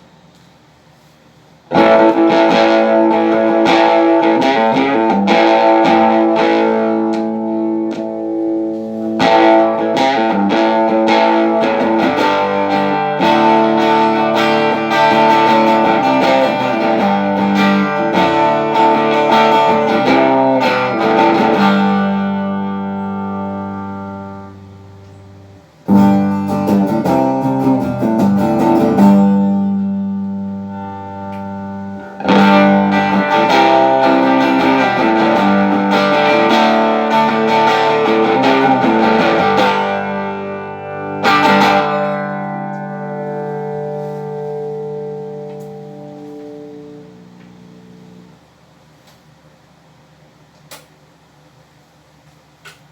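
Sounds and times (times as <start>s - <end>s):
electric guitar strummed chords: 1.7s - 48.8s.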